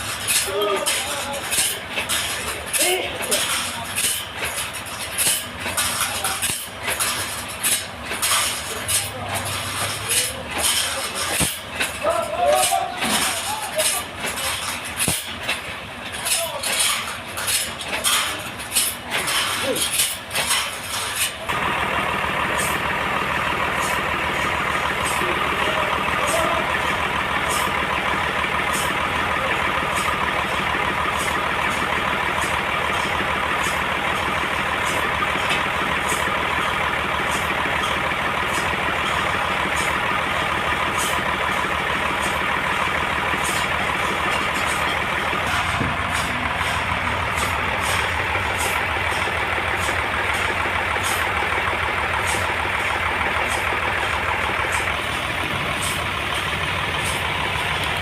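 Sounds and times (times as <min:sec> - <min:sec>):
band sawmill sawing log: 0:00.0 - 0:58.0.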